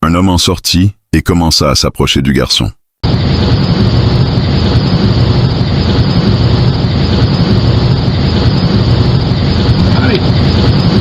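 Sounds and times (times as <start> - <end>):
loud steady rumbling: 3.0 - 11.0.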